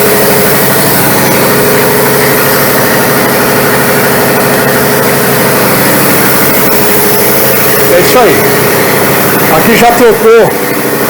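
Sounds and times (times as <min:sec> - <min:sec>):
vacuum pump humming and hissing: 0:00.0 - 0:11.0.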